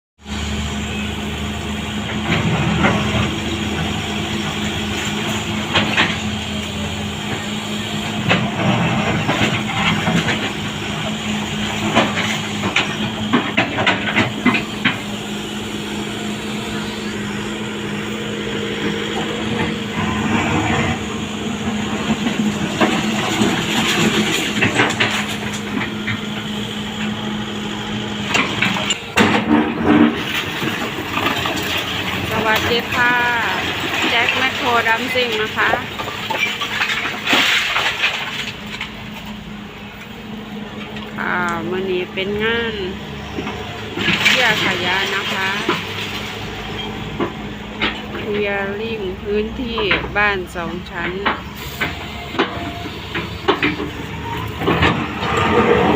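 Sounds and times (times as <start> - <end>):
excavator engine running: 0.2 - 55.9
debris knocking and clattering: 21.8 - 26.2, 28.3 - 39.2, 51.2 - 55.9.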